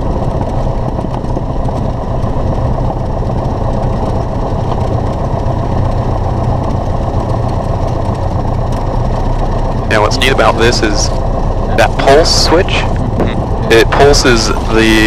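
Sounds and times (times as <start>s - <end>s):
propeller plane engine droning: 0.0s - 15.0s.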